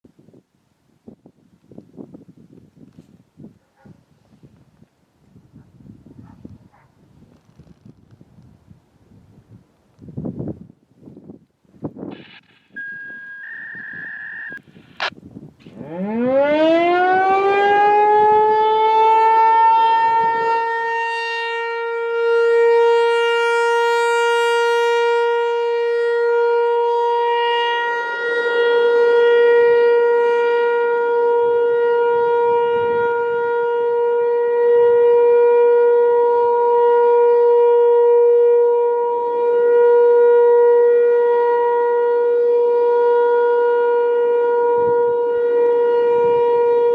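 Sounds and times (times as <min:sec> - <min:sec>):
warning siren winding up: 0:12.1 - 0:46.9
brief high beep: 0:12.7 - 0:14.6.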